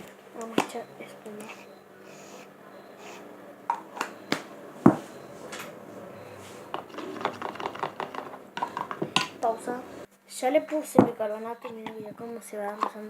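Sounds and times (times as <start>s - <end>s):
utensils and containers clicking: 6.6s - 9.6s, 11.0s - 13.0s.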